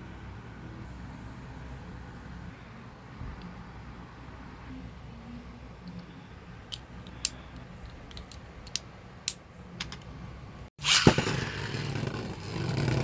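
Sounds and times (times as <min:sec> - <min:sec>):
plastic parts clicking: 0:06.7 - 0:10.0.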